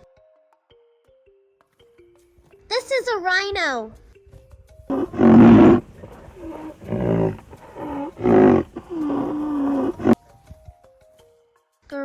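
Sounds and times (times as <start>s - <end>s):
rhinoceros grunting calls: 4.9s - 10.2s.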